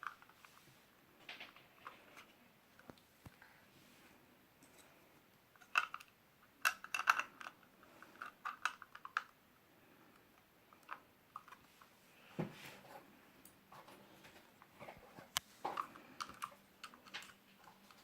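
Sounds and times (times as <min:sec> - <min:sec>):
plastic bricks clicking: 0:05.6 - 0:09.3.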